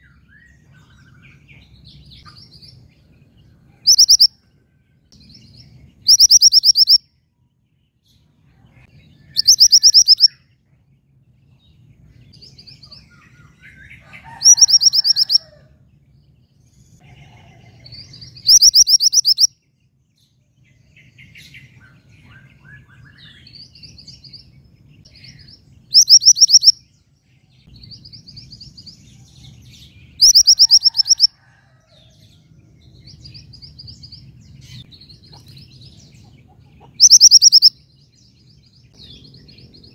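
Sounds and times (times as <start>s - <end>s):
songbird high-pitched trills: 3.9s - 4.4s, 5.2s - 7.1s, 9.1s - 10.4s, 12.4s - 15.5s, 18.0s - 19.6s, 25.1s - 27.0s, 30.1s - 31.4s, 36.9s - 38.0s.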